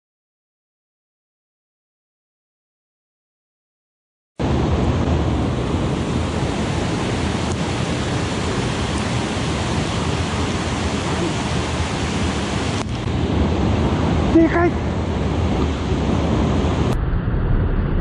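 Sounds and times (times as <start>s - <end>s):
water rushing over rocks: 4.4s - 17.0s.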